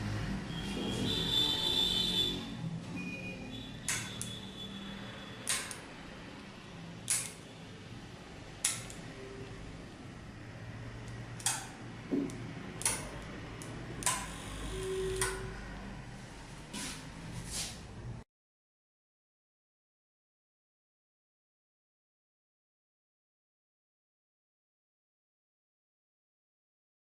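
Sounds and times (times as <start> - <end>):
micro switches clicking: 3.8 - 4.4, 5.4 - 5.8, 7.0 - 7.4, 8.6 - 9.1, 11.0 - 14.4, 15.1 - 15.5.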